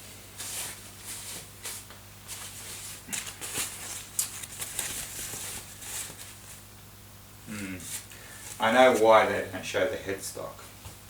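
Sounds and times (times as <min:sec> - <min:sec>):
low electrical hum: 0:00.0 - 0:11.0
packaging rustling and crinkling: 0:00.4 - 0:06.6.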